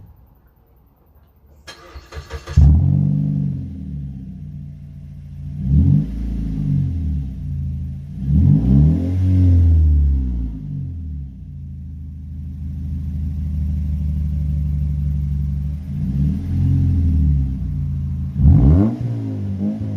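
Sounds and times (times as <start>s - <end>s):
engine cranking: 1.6s - 2.8s
engine idling and revving: 1.8s - 19.9s.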